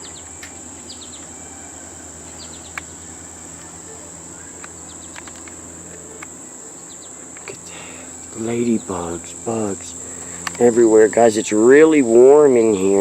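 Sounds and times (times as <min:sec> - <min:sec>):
high-pitched insect trill: 0:00.0 - 0:13.0
faint chirps and clicks: 0:02.3 - 0:03.0, 0:03.6 - 0:07.6, 0:10.2 - 0:10.6.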